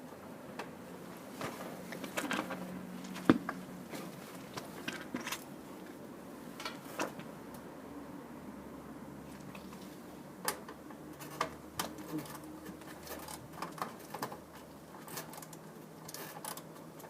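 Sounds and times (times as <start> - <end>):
tools and parts clicking and rattling: 1.4 - 5.5, 10.4 - 17.0.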